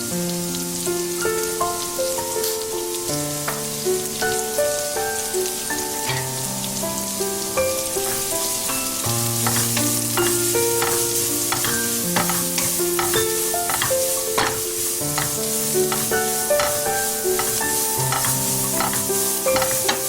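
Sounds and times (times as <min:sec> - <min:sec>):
food sizzling in a frying pan: 0:00.0 - 0:20.0
utensil clicking in pan: 0:08.0 - 0:20.0.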